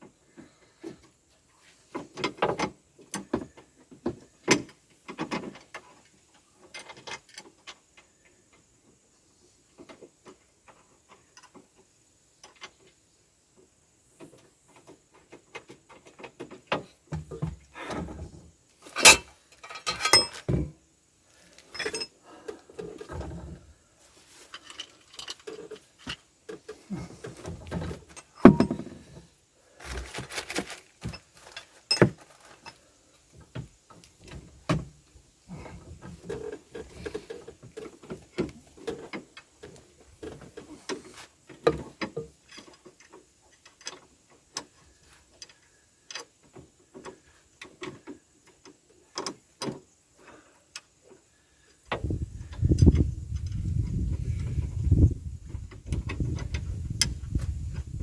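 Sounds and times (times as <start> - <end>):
metal tools clinking: 18.9 - 20.5, 21.6 - 22.2.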